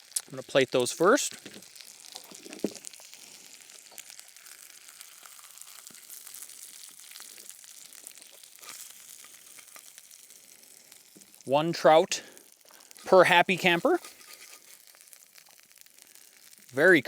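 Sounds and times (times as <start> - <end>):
fish sizzling in a pan: 0.0 - 17.0
light clicks and scrapes: 13.0 - 15.0.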